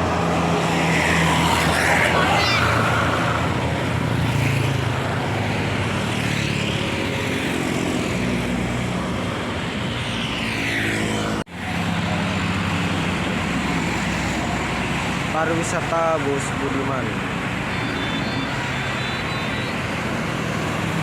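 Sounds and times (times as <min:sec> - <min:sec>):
bus engine drone: 0:00.0 - 0:10.3
tyre and road noise: 0:00.0 - 0:21.0.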